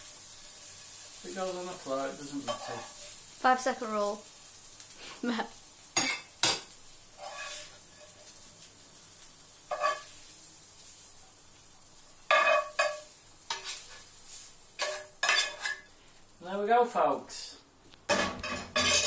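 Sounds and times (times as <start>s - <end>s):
faint pan sizzle: 0.0s - 19.0s
metal spatula scraping and clinking: 2.4s - 3.2s, 7.2s - 8.3s, 9.7s - 10.1s, 12.3s - 14.1s, 14.8s - 15.9s, 18.1s - 19.0s.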